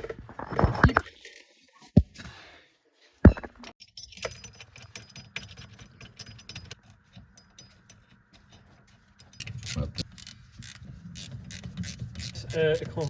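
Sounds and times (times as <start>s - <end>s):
hand tools and bolts clinking: 3.3s - 13.0s.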